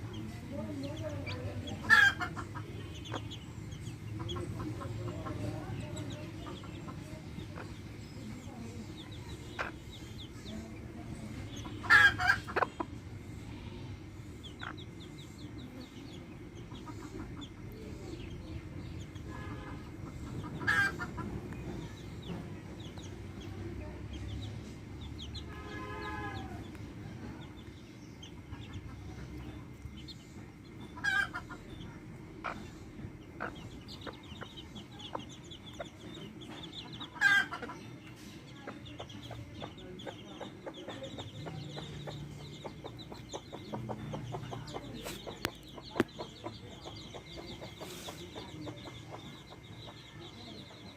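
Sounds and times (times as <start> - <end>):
chicks cheeping: 0.0 - 50.9
hens clucking: 0.0 - 50.9
hens squawking: 0.6 - 3.4, 11.4 - 13.8, 20.0 - 21.5, 30.8 - 36.3, 36.9 - 42.0.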